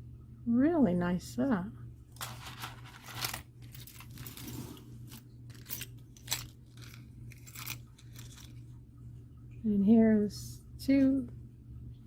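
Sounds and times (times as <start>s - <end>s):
packaging rustling and crinkling: 2.2s - 8.6s.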